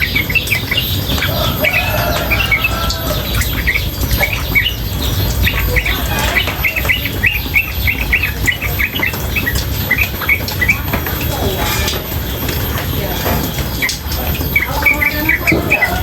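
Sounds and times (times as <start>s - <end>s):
bird chirping rapidly: 0.0s - 13.9s
running water: 0.0s - 16.0s.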